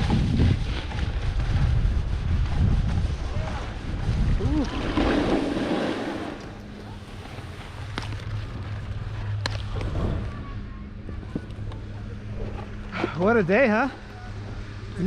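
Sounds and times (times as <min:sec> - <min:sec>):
wind rushing over microphone: 0:00.0 - 0:15.0
skis hissing through powder snow: 0:00.1 - 0:07.8
low steady hum: 0:00.1 - 0:15.0.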